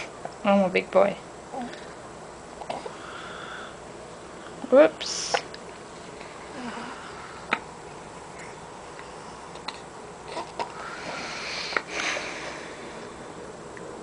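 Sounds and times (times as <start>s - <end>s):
boy hiccuping: 10.3s - 10.7s.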